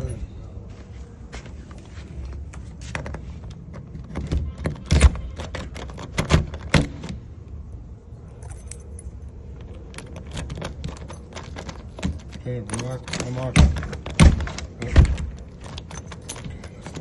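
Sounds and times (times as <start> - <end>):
keys jangling: 3.0 - 6.8, 8.2 - 17.0
metal clicks and knocks: 3.0 - 7.2, 9.5 - 17.0.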